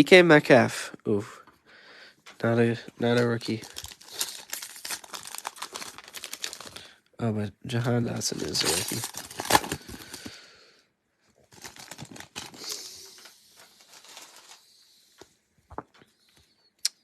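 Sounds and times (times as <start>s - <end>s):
trading cards rustling and scraping: 3.0s - 6.8s, 8.1s - 10.4s, 11.4s - 16.3s.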